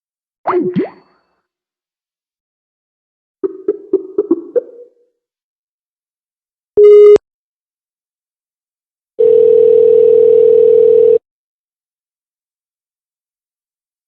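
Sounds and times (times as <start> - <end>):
telephone ringback tone: 9.2 - 11.2.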